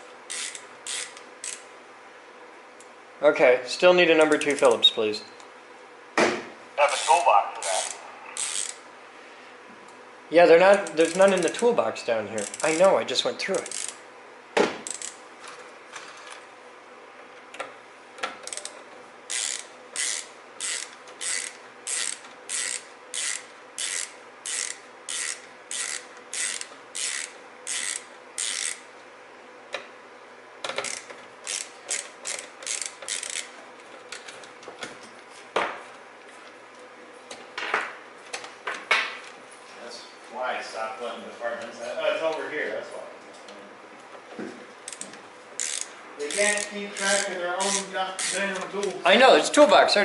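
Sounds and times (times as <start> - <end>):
ratchet clicking: 0.3 - 1.7, 4.2 - 4.8, 7.0 - 8.8, 10.7 - 11.7, 12.4 - 12.9, 13.5 - 14.0, 14.8 - 15.2, 18.3 - 28.9, 30.6 - 33.6, 44.9 - 49.0.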